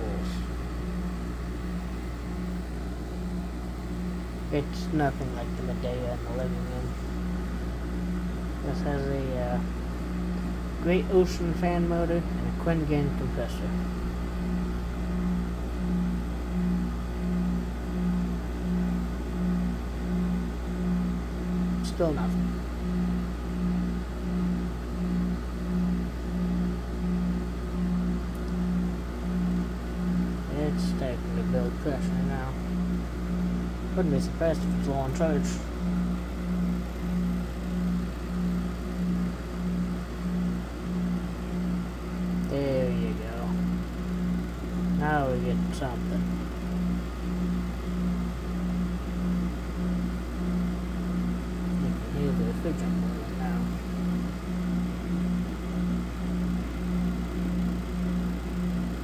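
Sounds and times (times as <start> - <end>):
air conditioner low hum: 0.0 - 59.0
pulsing higher hum: 0.0 - 59.0.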